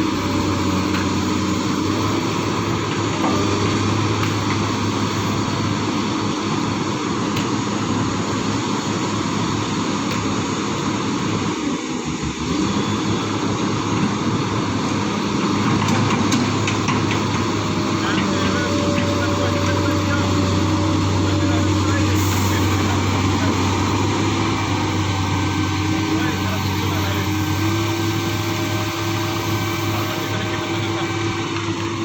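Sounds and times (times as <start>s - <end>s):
excavator diesel engine running: 0.0s - 32.0s.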